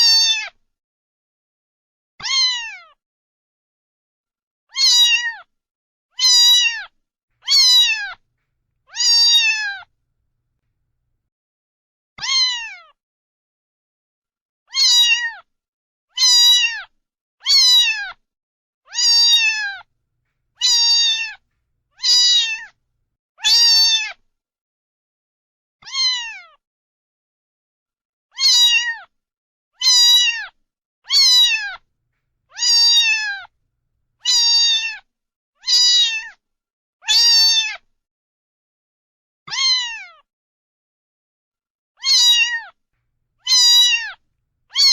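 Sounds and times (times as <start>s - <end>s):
cat meowing: 4.7s - 5.3s, 6.2s - 8.2s, 8.9s - 9.9s, 14.7s - 15.4s, 16.2s - 16.8s, 17.5s - 18.0s, 18.9s - 19.9s, 20.6s - 22.8s, 25.8s - 26.4s, 28.4s - 29.0s, 29.8s - 30.4s, 31.1s - 31.8s, 32.5s - 33.5s, 34.2s - 35.0s, 35.6s - 36.3s, 39.5s - 40.1s, 42.0s - 42.7s, 43.4s - 44.9s.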